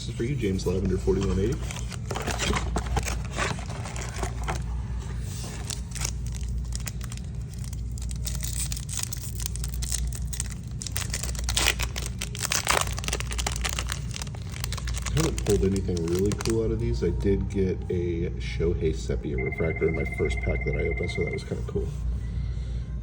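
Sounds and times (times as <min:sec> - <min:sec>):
low hum: 0:00.0 - 0:23.0
foil wrapper tearing and crinkling: 0:00.8 - 0:17.0.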